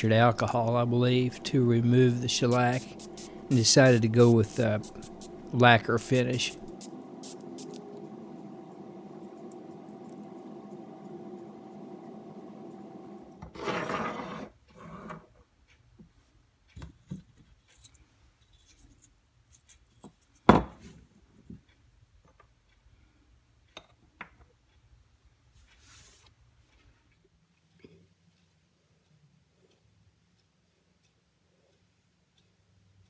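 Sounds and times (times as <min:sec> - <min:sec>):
short loud hiss: 0:00.0 - 0:11.5
motor hum: 0:00.0 - 0:13.5.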